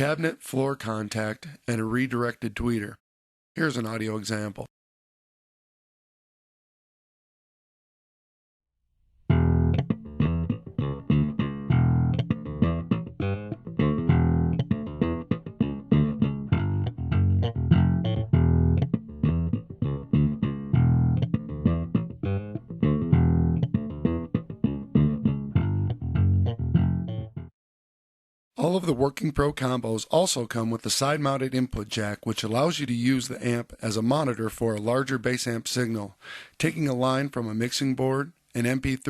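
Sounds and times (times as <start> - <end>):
plucked electric bass guitar: 9.3 - 27.5.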